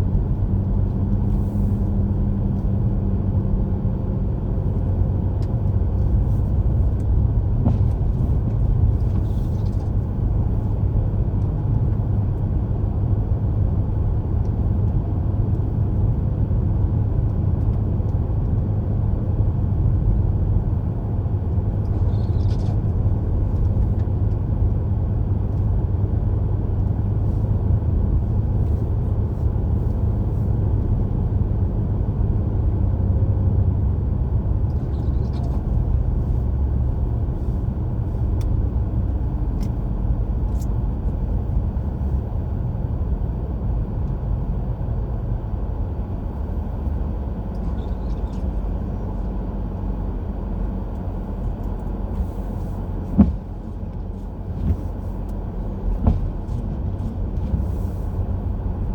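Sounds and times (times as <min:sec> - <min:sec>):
car cabin road rumble: 0:00.0 - 0:58.9.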